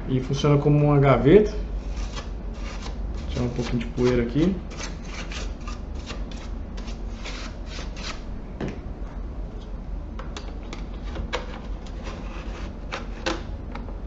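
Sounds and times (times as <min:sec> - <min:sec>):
brushing dust off plastic: 0:01.8 - 0:08.2, 0:10.9 - 0:13.4.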